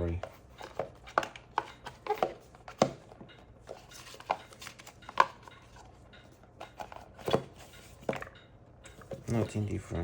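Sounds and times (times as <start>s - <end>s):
packaging clicks and rustles: 0.0s - 6.0s.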